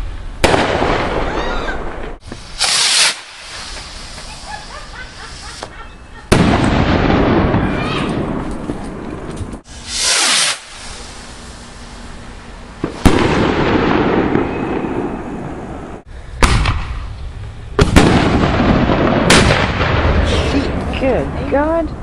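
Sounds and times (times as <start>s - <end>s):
firework bangs with crackle: 0.4s - 4.8s, 6.3s - 11.3s, 12.8s - 17.1s, 17.8s - 21.0s
firework hissing burst: 0.4s - 5.7s, 9.6s - 14.9s.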